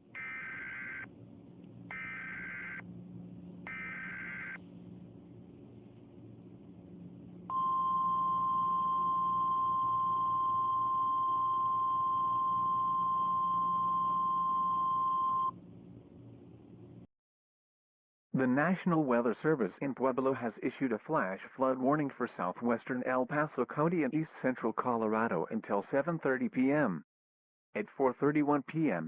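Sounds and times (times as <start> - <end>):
steady attention tone: 0.0 - 15.6
faint low hum: 0.0 - 17.1.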